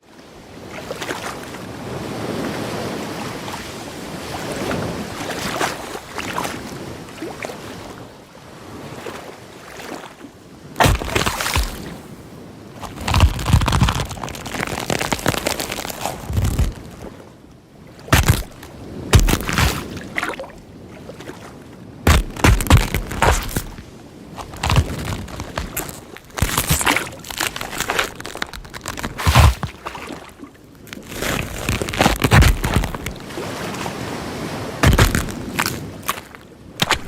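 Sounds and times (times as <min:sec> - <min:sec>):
water washing: 0:10.8 - 0:12.0, 0:12.8 - 0:17.0, 0:18.1 - 0:20.4, 0:22.1 - 0:33.8, 0:34.8 - 0:37.0.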